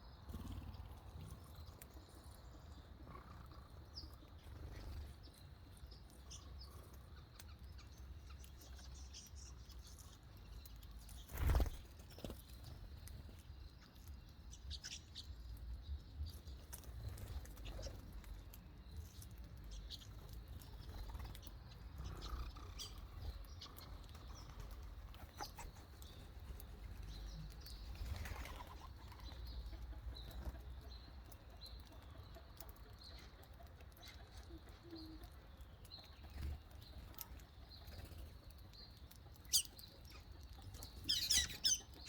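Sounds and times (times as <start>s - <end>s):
birds fluttering wings: 11.2s - 12.8s, 27.9s - 29.3s.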